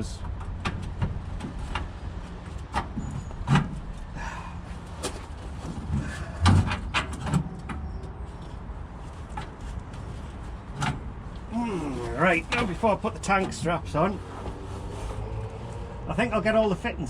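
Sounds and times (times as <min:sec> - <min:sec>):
metal knocks and clunks: 0:00.2 - 0:04.1, 0:05.0 - 0:08.2.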